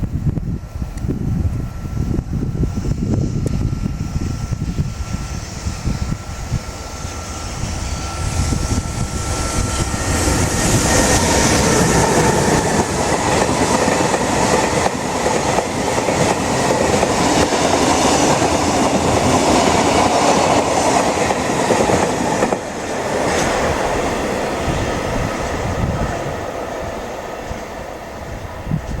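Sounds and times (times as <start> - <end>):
freight train wheels clattering: 6.5 - 29.0.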